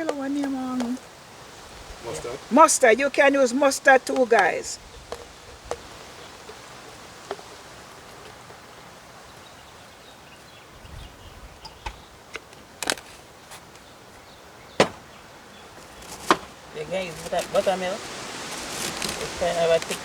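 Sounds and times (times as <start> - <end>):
outdoor background noise: 0.0 - 20.0.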